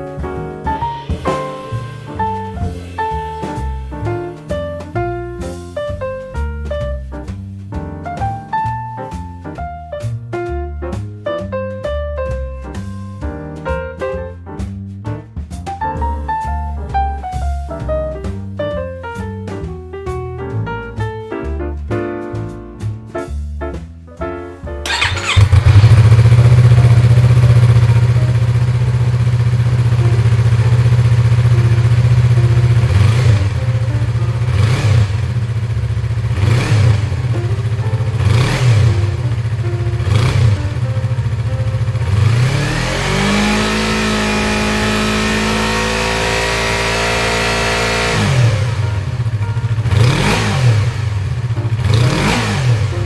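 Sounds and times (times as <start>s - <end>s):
motorcycle engine revving: 24.8s - 53.0s.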